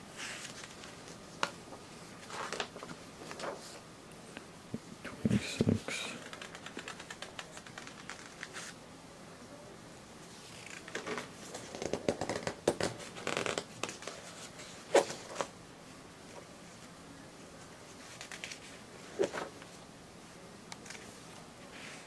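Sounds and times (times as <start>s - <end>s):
pages slapping: 0.2s - 1.6s, 2.2s - 3.8s, 5.7s - 8.8s, 10.6s - 15.5s, 18.0s - 19.7s
paper pages rustling: 0.2s - 3.8s, 5.6s - 8.8s, 10.4s - 15.5s, 17.9s - 19.8s.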